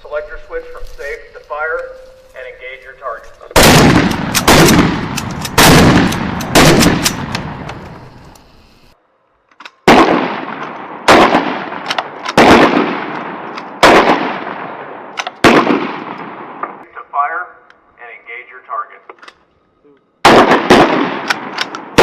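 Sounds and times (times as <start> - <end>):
shotgun blasts with echo: 3.5 - 7.9, 9.8 - 16.8, 20.2 - 22.0.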